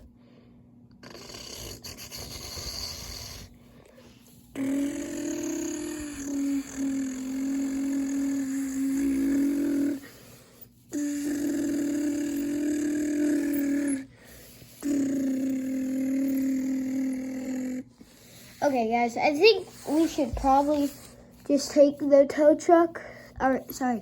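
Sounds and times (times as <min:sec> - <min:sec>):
child imitating engine noise: 0:04.5 - 0:10.2, 0:10.8 - 0:23.7.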